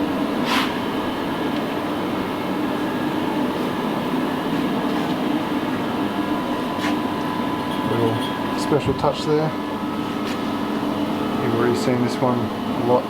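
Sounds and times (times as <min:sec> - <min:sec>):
mechanical hum: 0:00.0 - 0:13.0.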